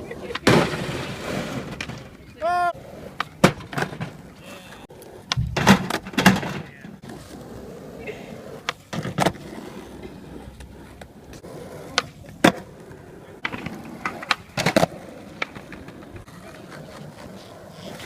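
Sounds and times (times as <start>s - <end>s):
skateboard rolling: 0.0s - 18.0s
skateboard clacking on ground: 3.0s - 7.4s, 8.0s - 18.0s.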